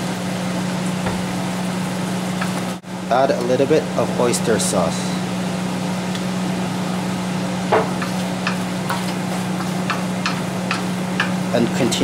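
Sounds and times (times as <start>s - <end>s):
steady low hum: 0.0s - 12.0s
shrimp sizzling in a wok: 5.4s - 11.6s
spatula striking a pan: 7.7s - 11.4s.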